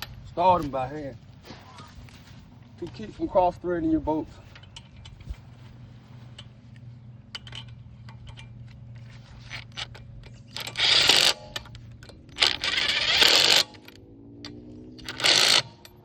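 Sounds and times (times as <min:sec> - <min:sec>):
metallic clicks of tools: 0:04.5 - 0:05.3, 0:06.3 - 0:16.0.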